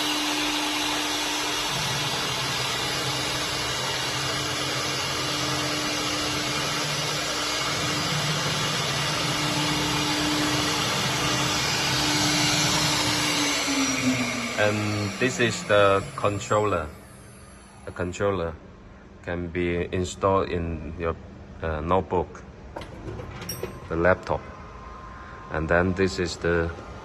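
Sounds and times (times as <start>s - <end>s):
cnc router spindle whine: 0.0s - 18.4s, 24.3s - 27.0s
machine noise low hum: 0.0s - 27.0s.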